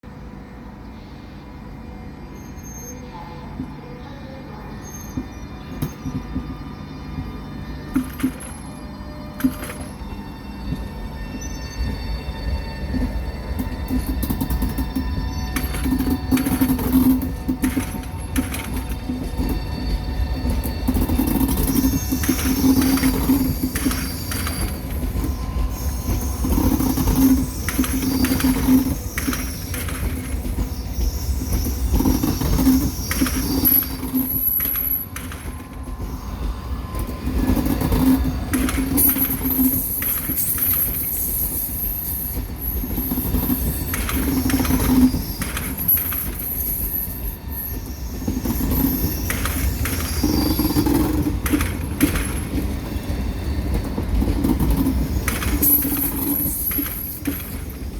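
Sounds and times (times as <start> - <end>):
train rumbling: 0.0 - 57.9
high wheel squeal: 2.3 - 3.2, 10.7 - 57.9
wheels clicking over rail joints: 12.8 - 57.9.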